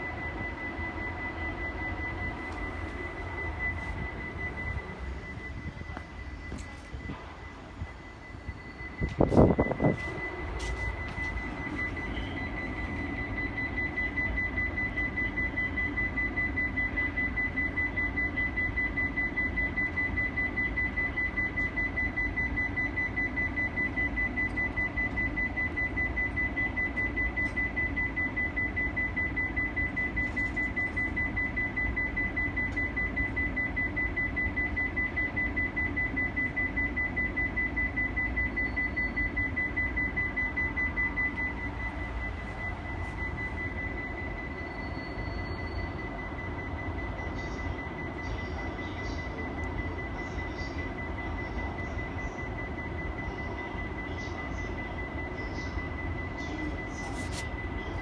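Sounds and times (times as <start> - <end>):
low steady train hum: 0.0 - 58.0
pulsing electronic alarm tone: 0.0 - 58.0.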